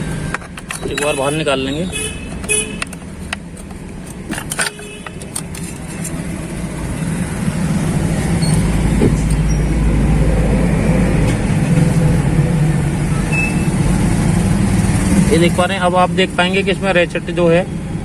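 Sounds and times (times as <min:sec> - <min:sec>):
sharp metallic clicks and knocks: 0:00.0 - 0:06.6
vehicle engine running: 0:00.0 - 0:16.9.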